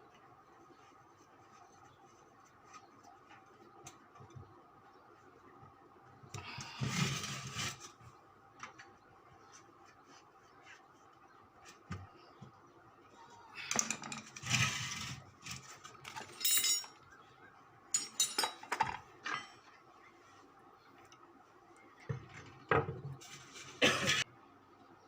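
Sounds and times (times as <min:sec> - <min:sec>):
metal tools clinking and scraping: 0:13.7 - 0:14.6, 0:15.5 - 0:17.0, 0:17.9 - 0:19.7.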